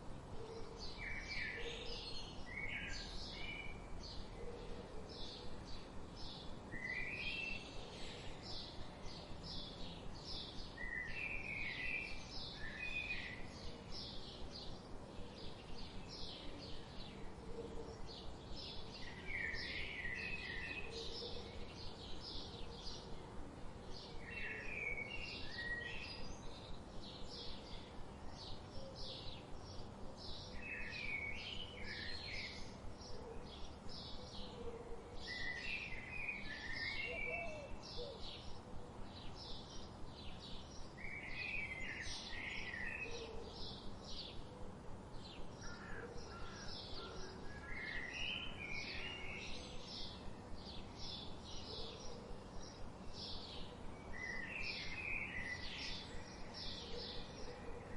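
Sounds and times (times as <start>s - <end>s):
faint background hiss: 0.0s - 57.9s.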